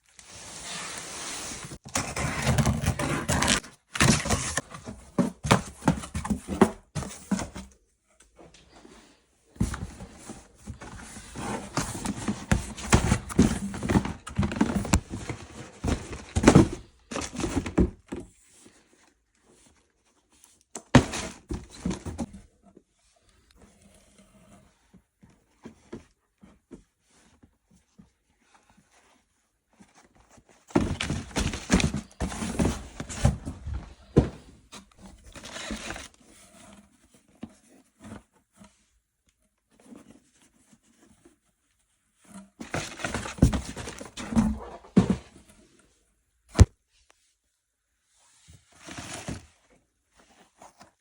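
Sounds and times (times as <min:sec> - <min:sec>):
packaging rustling: 0:30.8 - 0:34.2.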